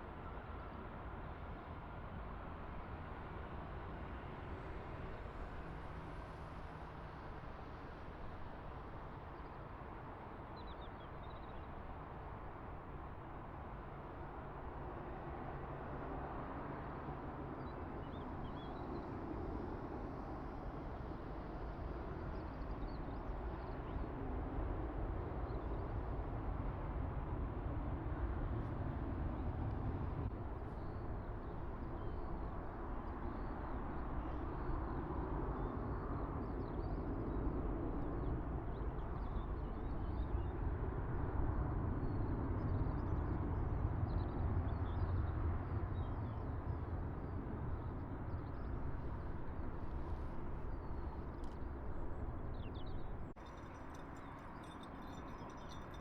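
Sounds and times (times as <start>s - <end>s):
distant aircraft rumble: 14.6s - 56.0s.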